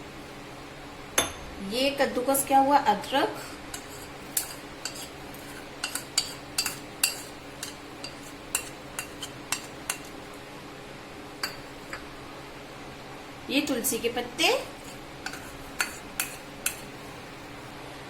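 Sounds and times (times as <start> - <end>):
metal utensil clinking on pan: 3.8 - 10.1, 11.4 - 12.0, 14.8 - 16.9.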